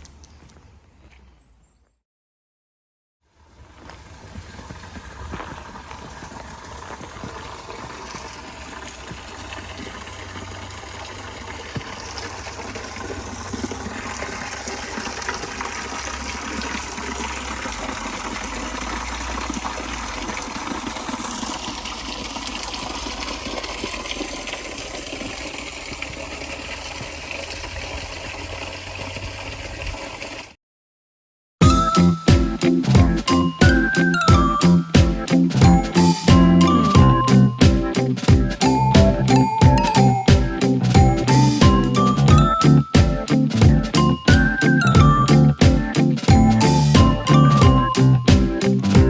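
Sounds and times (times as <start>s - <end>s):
flowing water rushing: 4.2s - 30.5s.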